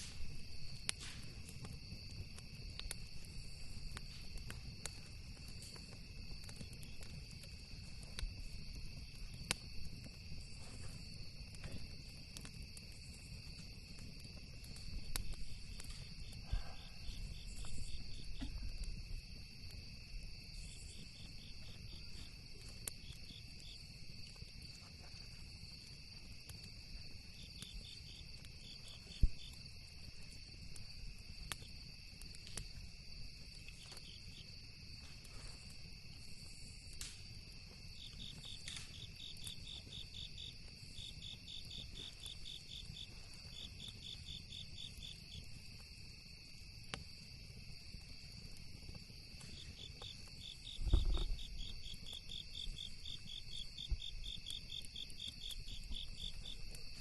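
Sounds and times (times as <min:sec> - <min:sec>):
campfire crackling: 0:00.0 - 0:57.0
crickets chirping: 0:00.0 - 0:57.0
low thud: 0:50.8 - 0:51.4.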